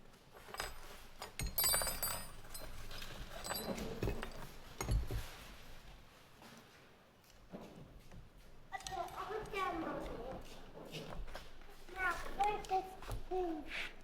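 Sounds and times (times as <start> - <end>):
small metal parts clinking: 0.4 - 5.2.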